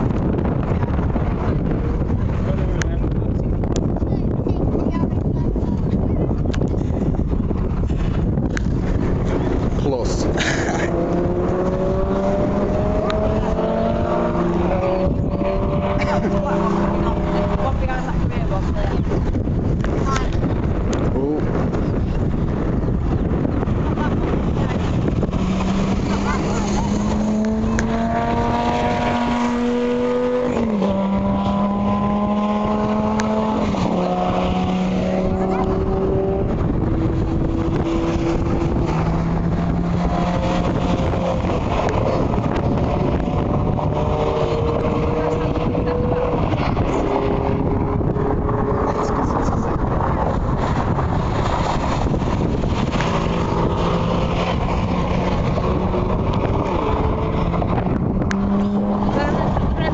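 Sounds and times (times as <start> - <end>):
car engine accelerating hard: 0.0 - 59.9
road and wind noise: 0.0 - 59.9
wind buffeting microphone: 0.0 - 59.9.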